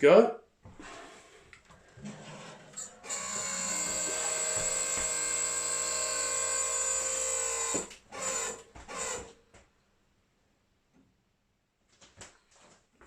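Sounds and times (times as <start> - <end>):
small machine whining: 2.2 - 9.4.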